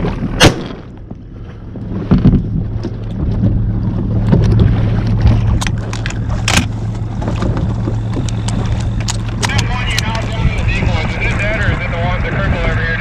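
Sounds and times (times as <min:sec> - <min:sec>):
boat motor running: 0:00.0 - 0:13.0
wind on microphone: 0:00.0 - 0:13.0
loud sharp crack: 0:00.4 - 0:01.0
sharp clicks: 0:07.4 - 0:10.3.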